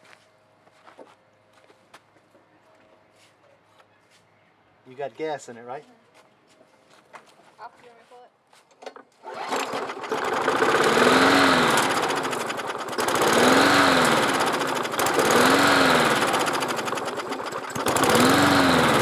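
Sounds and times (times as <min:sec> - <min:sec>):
lawn mower engine surging: 0:09.2 - 0:19.0.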